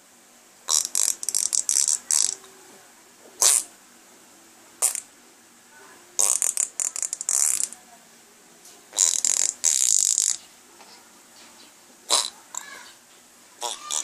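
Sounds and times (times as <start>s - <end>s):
man making fart noise: 0.7s - 2.4s, 3.4s - 3.7s, 4.8s - 5.1s, 6.2s - 7.8s, 8.9s - 10.4s, 12.1s - 12.6s, 13.6s - 14.0s
baby vocal sounds: 0.8s - 3.8s, 12.1s - 13.0s, 13.6s - 14.0s.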